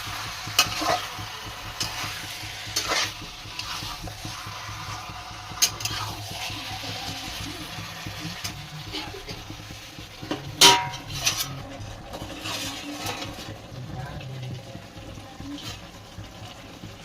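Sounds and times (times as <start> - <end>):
metal spoon scraping in pan: 0.0 - 13.6, 15.5 - 15.9
food sizzling in pan: 0.0 - 17.0
metal clanking on pan: 0.4 - 3.9, 5.5 - 6.5, 10.2 - 13.6.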